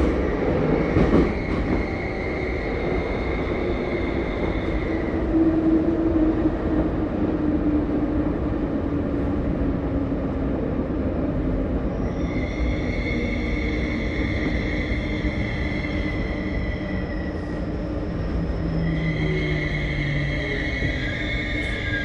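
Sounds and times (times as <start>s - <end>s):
high-pitched rail squeal: 0.0s - 5.4s, 11.9s - 22.0s
subway train rumbling on rails: 0.0s - 22.0s.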